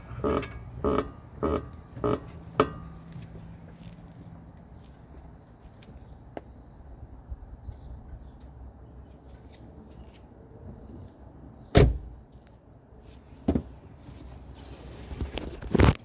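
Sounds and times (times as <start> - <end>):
low vehicle rumble: 0.0 - 9.1
sharp clunks: 0.3 - 3.0.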